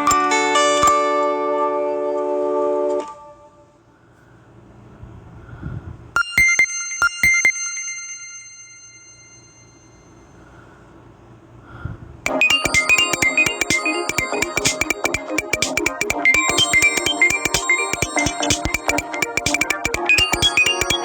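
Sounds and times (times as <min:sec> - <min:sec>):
busy electronic ringtone: 0:06.2 - 0:10.0, 0:12.3 - 0:21.0
high electronic ringtone notes: 0:12.3 - 0:21.0.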